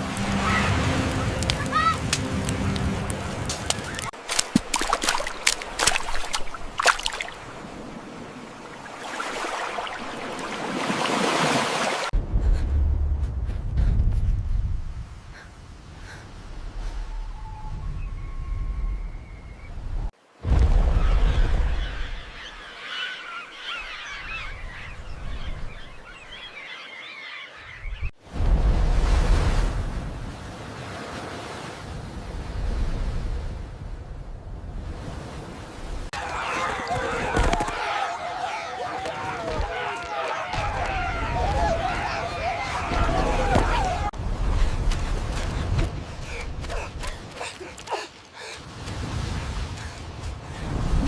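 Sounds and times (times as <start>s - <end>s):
sharp water splashes: 0.0s - 12.1s
rushing water: 0.0s - 12.2s, 34.8s - 51.0s
flock of birds calling: 21.0s - 28.1s, 36.2s - 44.2s.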